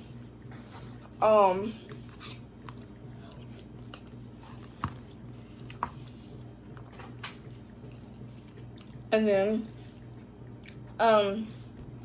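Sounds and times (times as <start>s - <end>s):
soft chewing: 0.0s - 12.0s
steady low hum: 0.0s - 12.0s.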